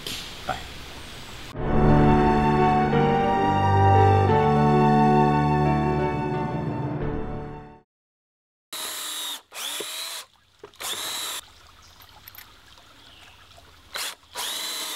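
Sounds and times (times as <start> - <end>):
music: 1.6 - 7.9
power drill spinning up: 8.8 - 11.4, 14.0 - 14.9.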